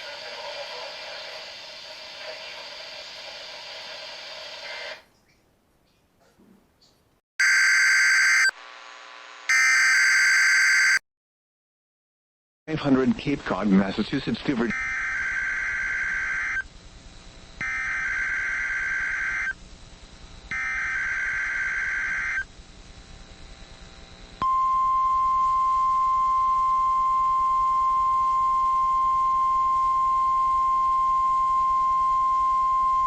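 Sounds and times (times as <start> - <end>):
harsh electronic data bursts: 7.4 - 8.5, 9.5 - 11.0
steady warning alarm tone: 7.4 - 8.5, 9.5 - 11.0.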